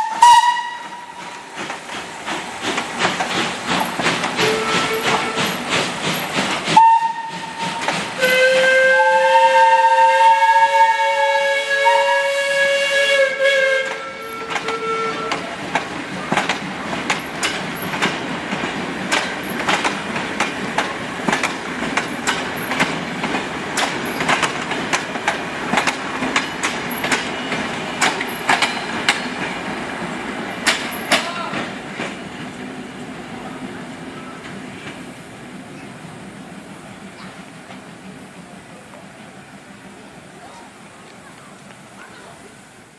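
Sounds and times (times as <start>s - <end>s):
steam locomotive whistle: 0.0s - 1.4s, 4.4s - 5.7s, 6.7s - 15.5s
train wheels clicking over rail joints: 0.0s - 10.7s, 13.4s - 33.0s, 34.2s - 40.1s.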